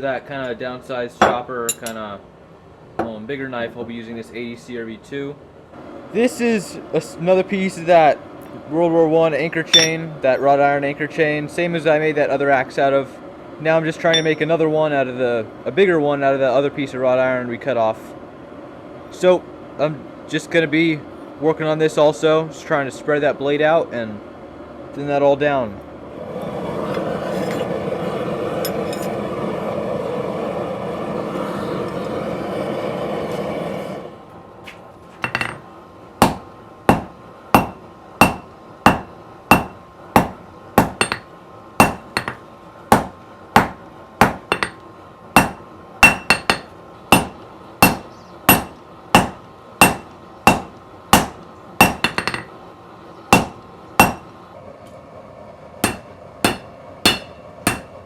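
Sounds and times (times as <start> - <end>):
hammer ringing on anvil: 9.7 - 10.0, 14.1 - 14.6, 35.2 - 35.6, 36.2 - 41.2, 41.8 - 44.8, 45.4 - 52.5, 53.4 - 54.3, 55.8 - 58.0
steady roaring noise: 25.8 - 58.0.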